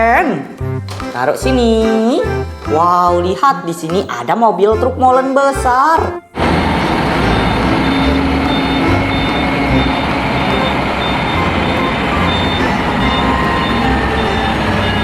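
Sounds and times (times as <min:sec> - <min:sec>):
reversing alarm beeping: 0:06.1 - 0:15.0
heavy truck engine running: 0:06.4 - 0:15.0.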